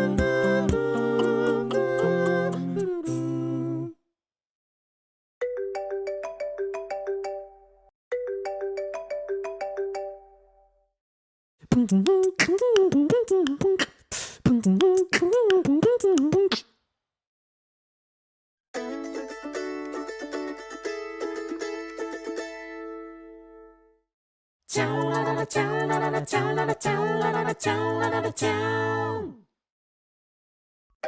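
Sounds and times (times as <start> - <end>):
ringtone melody: 0.0 - 2.9, 5.4 - 10.9
vocal beatbox: 0.0 - 3.3, 11.6 - 16.7.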